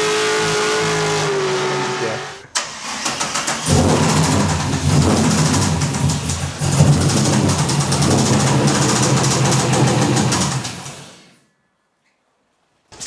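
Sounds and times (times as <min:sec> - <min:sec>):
car engine idling with knock: 0:03.6 - 0:11.2.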